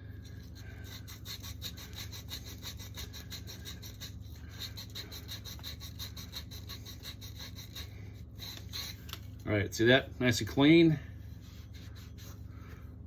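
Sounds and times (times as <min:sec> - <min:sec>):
abrasive scrubbing copper pipe: 0:00.0 - 0:09.2.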